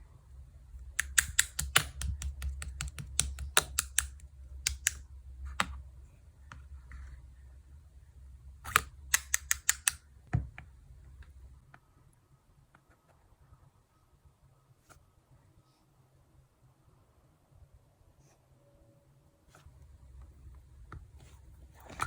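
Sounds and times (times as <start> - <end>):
sharp clicking taps: 1.0 - 5.0.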